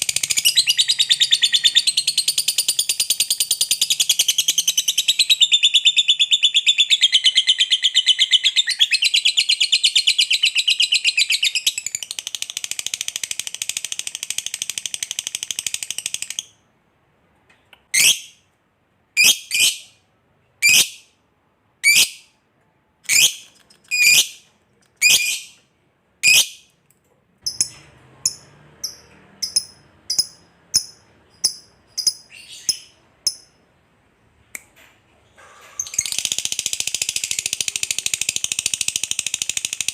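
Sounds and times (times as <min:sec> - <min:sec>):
lovebird chattering trill: 0:28.3 - 0:33.5.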